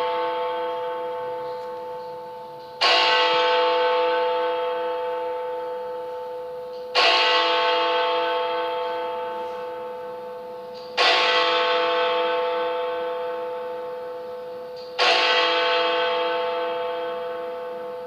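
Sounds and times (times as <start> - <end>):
large bell striking: 0.0 - 18.0.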